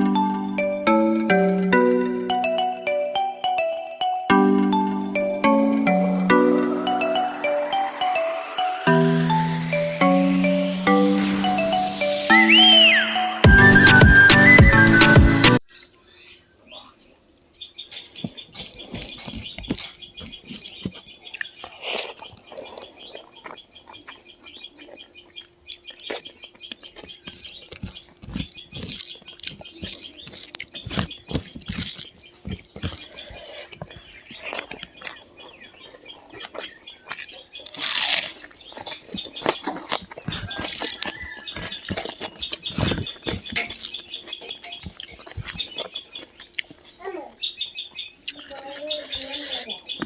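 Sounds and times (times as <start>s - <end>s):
upbeat background music: 0.0s - 15.6s
wet chewing and lip-smacking: 18.0s - 46.9s.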